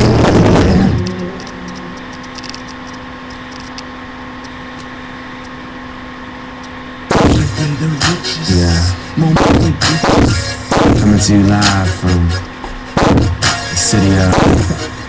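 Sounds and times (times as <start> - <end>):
distorted hip-hop music: 0.0 - 1.6, 7.1 - 15.0
low electrical hum: 0.0 - 15.0.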